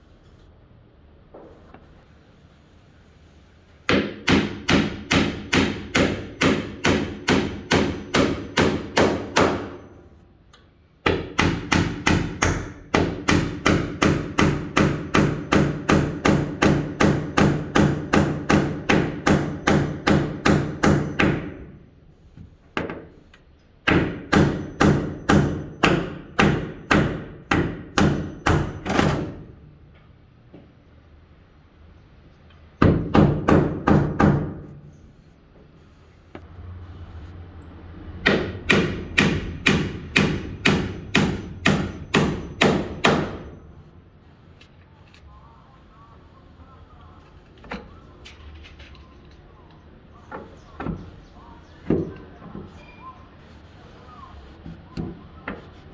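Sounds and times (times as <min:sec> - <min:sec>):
hammer driving nails into wood: 0:03.9 - 0:09.9, 0:11.0 - 0:21.6, 0:23.8 - 0:29.4, 0:38.2 - 0:43.5.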